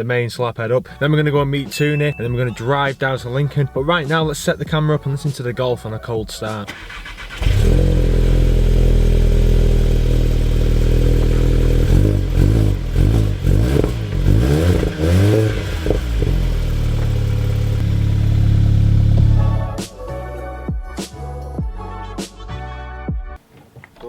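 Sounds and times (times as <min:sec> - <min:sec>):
car engine idling and revving: 0:06.7 - 0:19.8.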